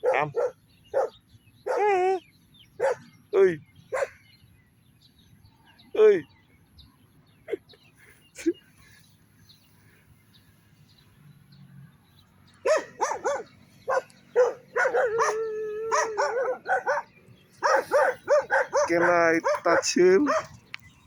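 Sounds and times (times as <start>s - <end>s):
dog yapping: 0.0s - 2.2s, 2.8s - 3.0s, 3.9s - 4.2s, 12.6s - 20.5s
dog yelp: 0.0s - 2.2s, 2.8s - 3.0s, 3.9s - 4.2s, 12.6s - 20.6s.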